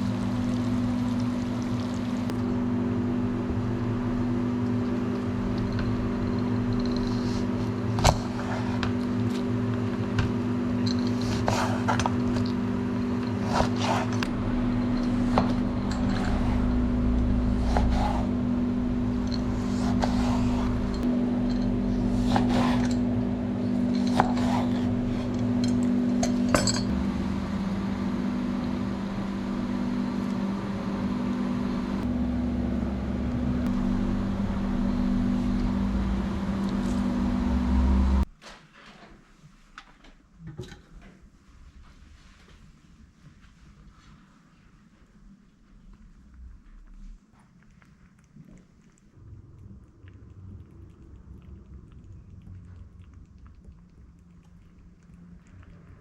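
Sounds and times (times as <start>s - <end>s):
steady low hum: 0.0s - 38.3s
utensils clinking against dishes: 19.3s - 26.9s.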